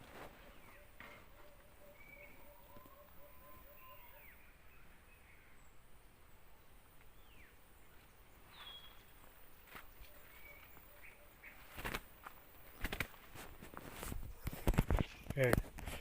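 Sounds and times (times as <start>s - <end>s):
low repeated bird notes: 0.0s - 13.2s
high bird chirps: 0.5s - 4.5s.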